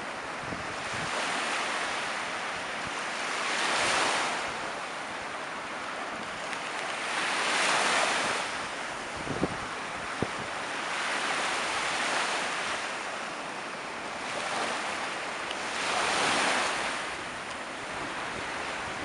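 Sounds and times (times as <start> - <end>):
sea waves washing in: 0.0 - 19.0
wind buffeting microphone: 0.3 - 1.5, 6.2 - 12.3.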